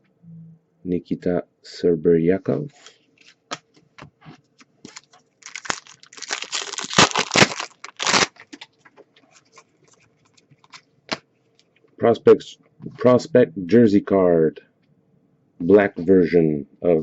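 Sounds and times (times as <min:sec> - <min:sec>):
packaging rustling: 0:04.9 - 0:10.8.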